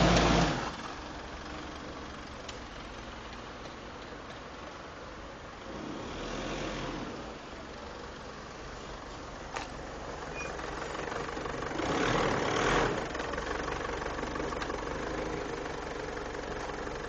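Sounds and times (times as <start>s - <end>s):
pickup truck engine running: 7.5s - 17.0s.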